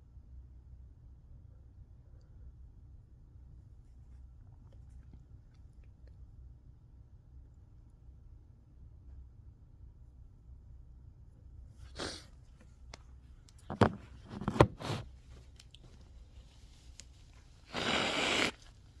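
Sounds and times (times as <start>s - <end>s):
person sniffing: 11.8s - 12.4s, 17.6s - 18.7s
short sharp snorts: 11.8s - 12.4s, 17.6s - 18.7s.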